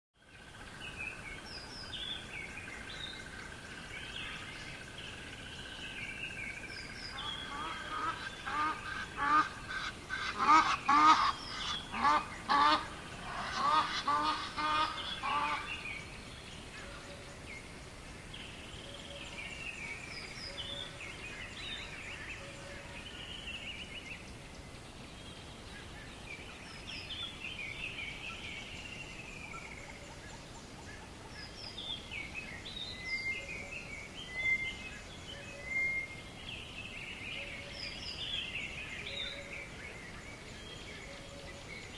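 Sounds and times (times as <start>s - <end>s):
faint steady hiss: 0.2s - 41.9s
songbirds singing: 0.2s - 41.9s
waterbirds calling: 6.5s - 17.2s.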